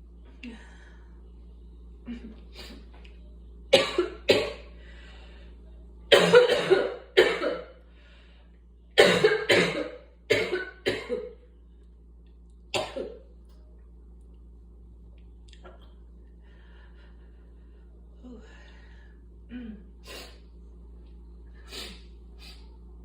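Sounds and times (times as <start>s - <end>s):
person coughing: 3.7s - 4.7s, 6.1s - 7.7s, 9.0s - 11.4s, 12.8s - 13.2s.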